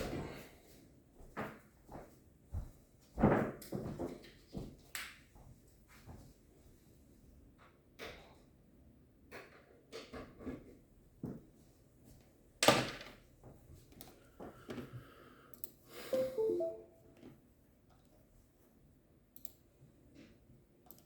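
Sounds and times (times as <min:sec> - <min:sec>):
electronic tones stepping in pitch: 0:16.1 - 0:17.0.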